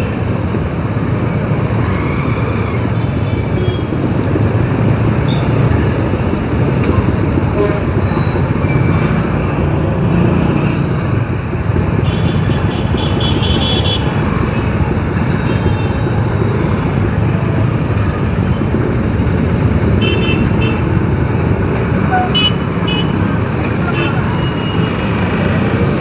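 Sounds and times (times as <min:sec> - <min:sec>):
wind and road noise: 0:00.0 - 0:26.0
motorcycle engine: 0:00.1 - 0:26.0
vehicle horns honking: 0:07.6 - 0:08.4, 0:12.0 - 0:14.1, 0:20.0 - 0:20.8, 0:22.1 - 0:23.2.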